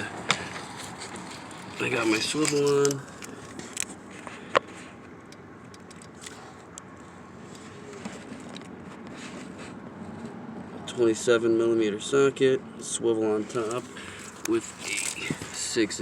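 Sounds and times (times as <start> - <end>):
faint background noise: 0.0 - 16.0
sharp metallic clicks: 5.2 - 6.9.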